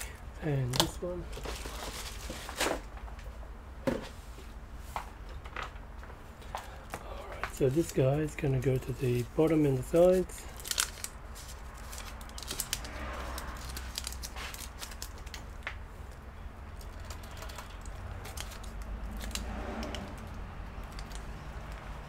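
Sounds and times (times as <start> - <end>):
steady low hum: 0.0 - 22.0
adhesive tape being peeled and pressed: 10.0 - 22.0.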